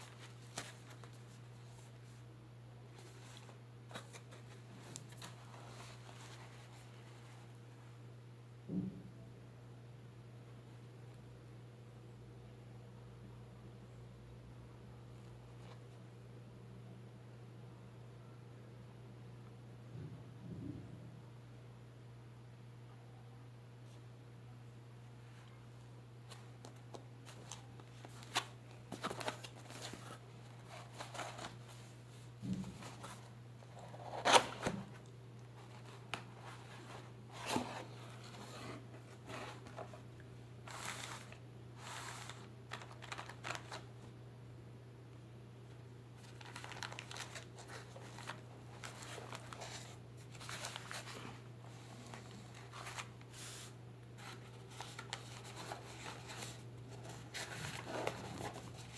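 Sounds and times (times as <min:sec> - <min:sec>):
packaging rustling and tearing: 0:27.3 - 0:31.8, 0:40.7 - 0:43.9, 0:46.2 - 0:58.9.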